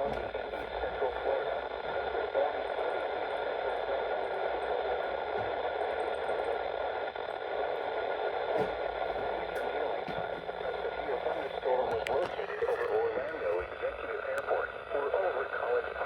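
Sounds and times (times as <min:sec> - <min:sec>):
radio static hiss: 0:00.0 - 0:16.0.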